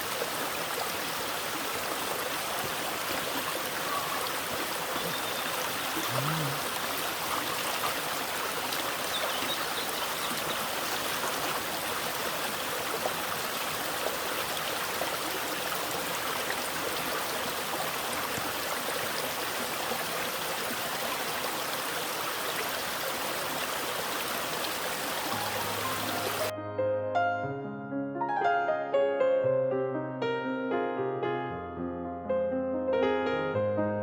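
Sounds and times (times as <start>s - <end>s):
stream rushing: 0.0s - 26.5s.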